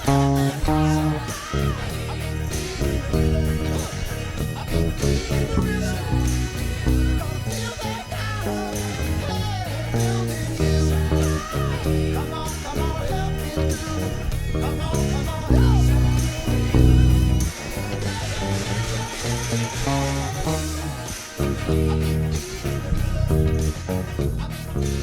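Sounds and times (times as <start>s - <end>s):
electric bass playing: 0.0s - 25.0s
person singing: 0.0s - 25.0s
pop-rock backing track: 0.0s - 25.0s.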